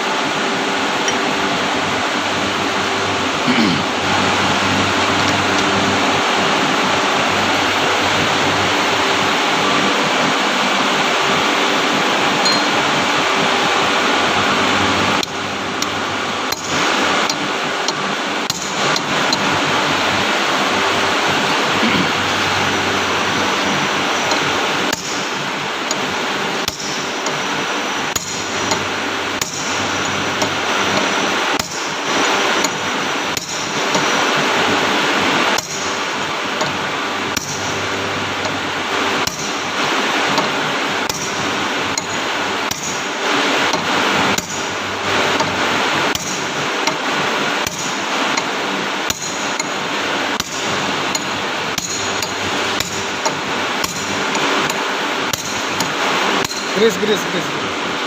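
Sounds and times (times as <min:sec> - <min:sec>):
steady background hiss: 0:00.0 - 0:58.0
hammer striking metal: 0:12.4 - 0:12.9, 0:36.6 - 0:37.8, 0:39.2 - 0:39.6, 0:50.4 - 0:56.8.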